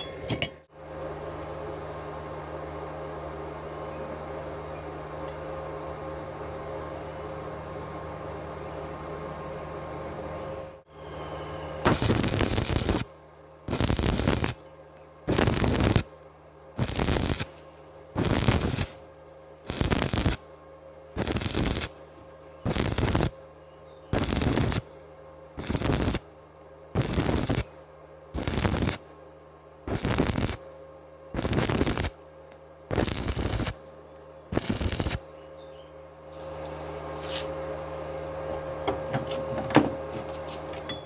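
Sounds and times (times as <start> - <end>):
steady hum: 0.0 - 41.0
welding arc crackling: 11.8 - 16.2, 16.8 - 17.6, 18.2 - 20.5, 21.2 - 24.9, 25.6 - 29.2, 29.9 - 30.7, 31.3 - 32.3, 32.9 - 33.9, 34.5 - 35.3.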